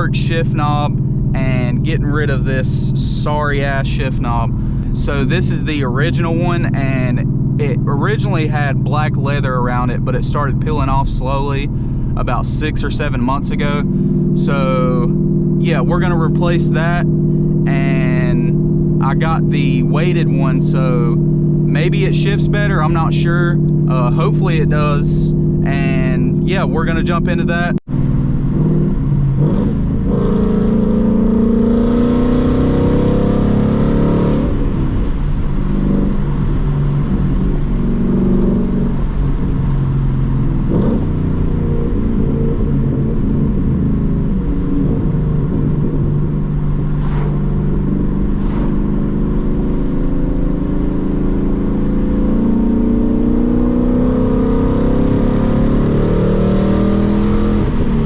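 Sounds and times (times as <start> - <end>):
car engine accelerating: 0.0 - 58.0.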